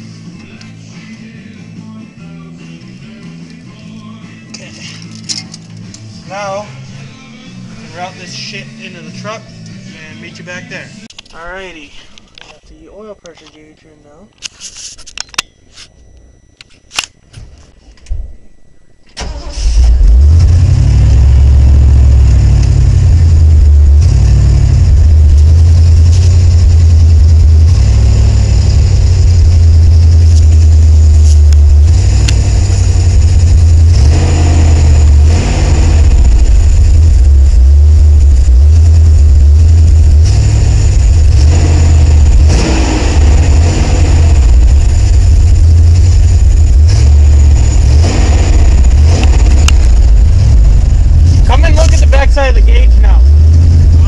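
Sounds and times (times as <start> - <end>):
pickup truck engine starting: 19.1 - 54.0
truck engine running loudly: 19.2 - 54.0.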